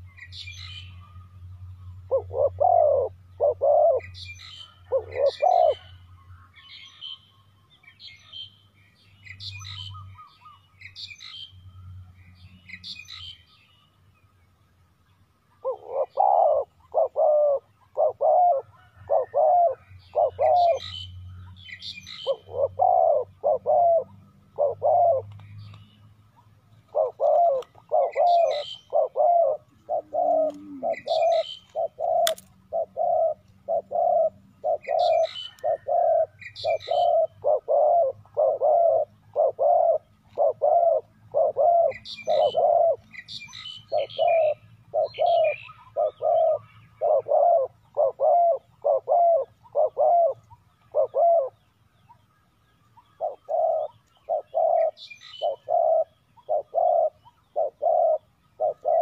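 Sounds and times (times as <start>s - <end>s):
small birds chirping: 0.0s - 59.0s
dove cooing: 1.9s - 6.1s, 15.6s - 21.0s, 22.1s - 25.4s, 26.8s - 51.6s, 53.0s - 59.0s.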